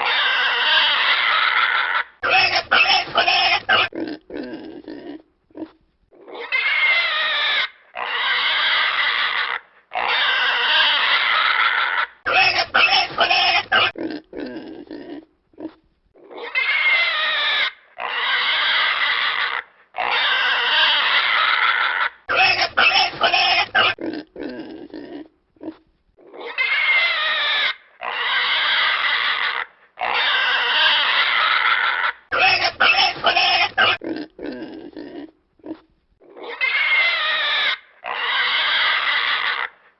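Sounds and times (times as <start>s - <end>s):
pig grunts: 0.0s - 39.8s
pig squealing: 0.0s - 39.9s.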